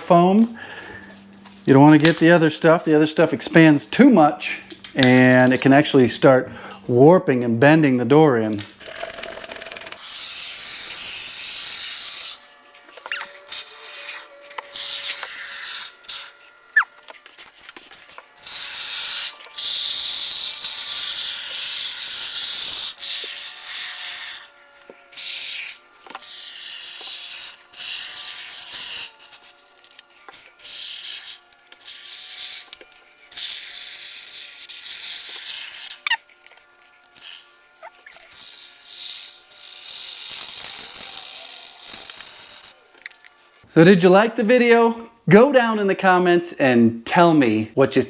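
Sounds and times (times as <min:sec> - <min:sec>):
spray foam can hissing: 0:10.0 - 0:24.5, 0:30.3 - 0:36.2.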